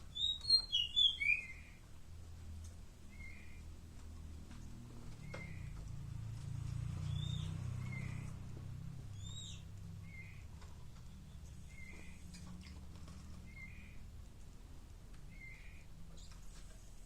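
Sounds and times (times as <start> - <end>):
songbird chirping: 0.0 - 16.9
whistled bird notes: 0.1 - 1.8, 7.1 - 8.2, 9.2 - 10.4, 15.3 - 15.8.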